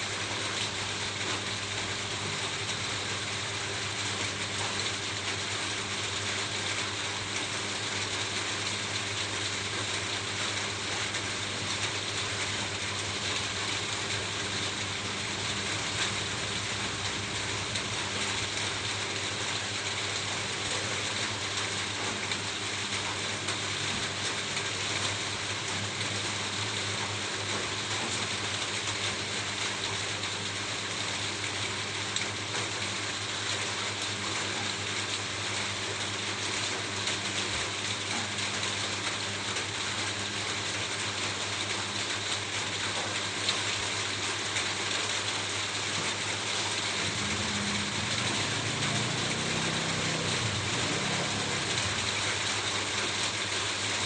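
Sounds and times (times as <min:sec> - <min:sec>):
rain on a roof: 0:00.0 - 0:54.0.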